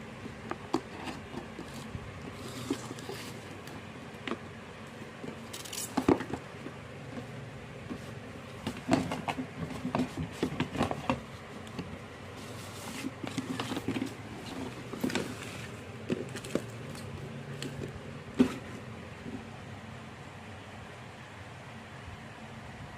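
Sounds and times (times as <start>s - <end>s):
steady low hum: 0.0s - 22.9s
handling clicks and knocks: 5.2s - 12.0s.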